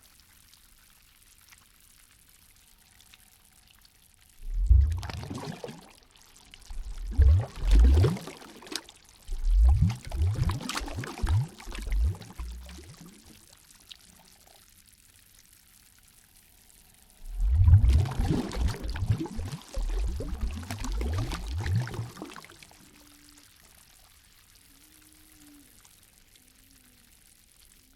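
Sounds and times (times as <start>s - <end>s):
water gurgling and sloshing: 4.4s - 14.0s, 17.1s - 23.3s.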